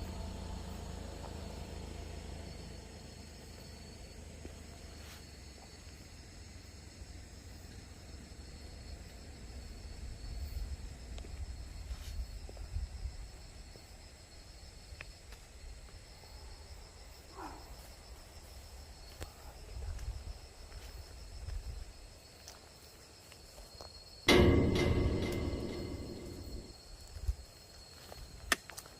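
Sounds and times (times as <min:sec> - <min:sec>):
crickets trilling: 0:00.0 - 0:28.9
low rumble: 0:24.3 - 0:26.7.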